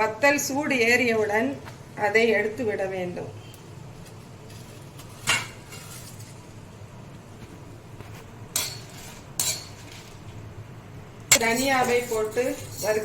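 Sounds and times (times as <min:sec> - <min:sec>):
metal spoon clinking on pan: 0:08.5 - 0:10.2, 0:11.3 - 0:13.0.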